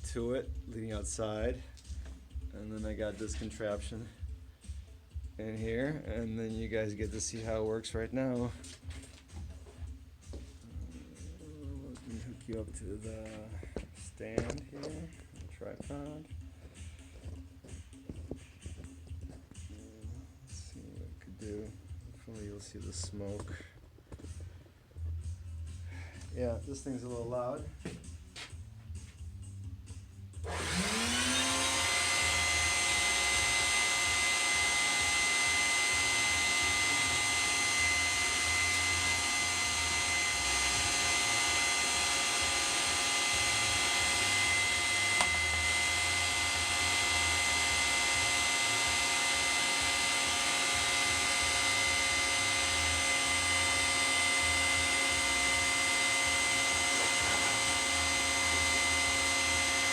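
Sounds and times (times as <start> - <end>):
shop vac motor whining: 30.3 - 59.9.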